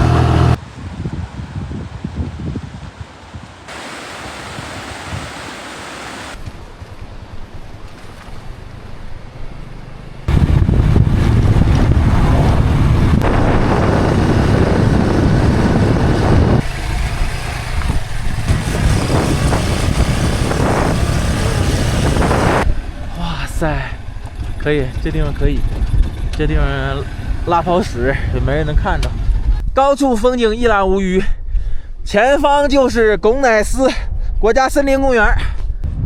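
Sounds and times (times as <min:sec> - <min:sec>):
wind buffeting microphone: 0:00.0 - 0:05.6, 0:10.3 - 0:23.1, 0:24.0 - 0:29.8, 0:34.0 - 0:36.0
low rumble: 0:08.9 - 0:29.8.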